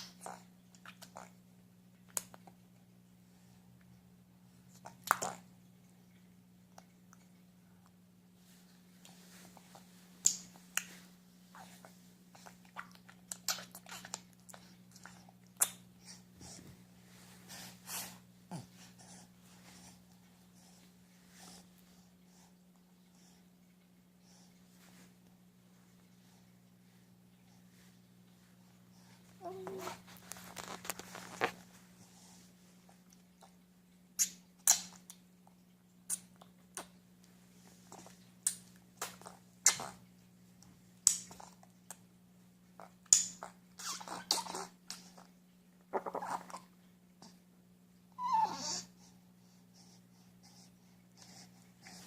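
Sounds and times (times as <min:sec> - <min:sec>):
steady low hum: 0:00.0 - 0:52.0
baby making pig-like sounds: 0:43.8 - 0:44.8, 0:48.2 - 0:48.9.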